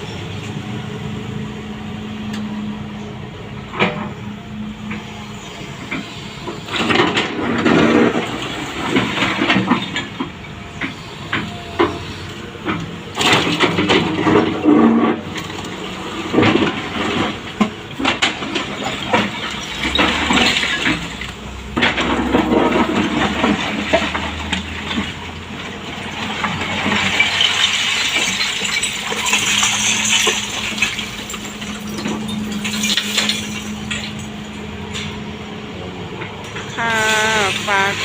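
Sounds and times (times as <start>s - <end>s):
excavator engine running: 0.0s - 27.2s
rubble clattering and crunching: 6.7s - 11.0s, 12.6s - 35.2s.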